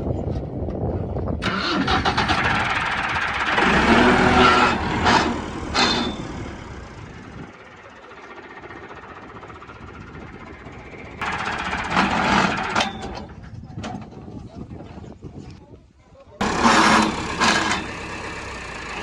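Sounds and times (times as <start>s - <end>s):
thresher working: 1.4s - 7.5s, 10.2s - 13.3s, 16.4s - 19.0s
tractor diesel engine running: 1.4s - 14.4s, 16.4s - 19.0s.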